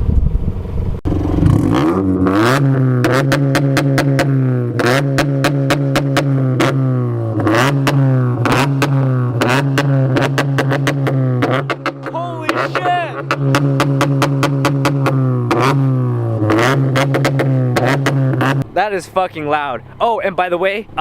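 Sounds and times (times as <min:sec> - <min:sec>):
car engine revving high: 0:01.1 - 0:18.7
exhaust pops and cracks: 0:07.7 - 0:12.6.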